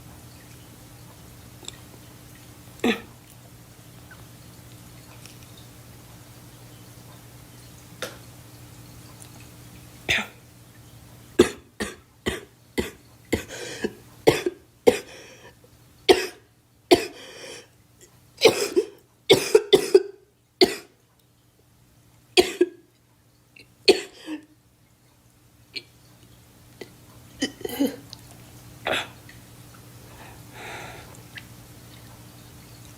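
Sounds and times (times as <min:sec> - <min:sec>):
girl coughing: 0:11.4 - 0:15.1, 0:16.1 - 0:17.2, 0:18.4 - 0:20.9, 0:22.4 - 0:22.8, 0:23.9 - 0:24.5, 0:27.4 - 0:28.0.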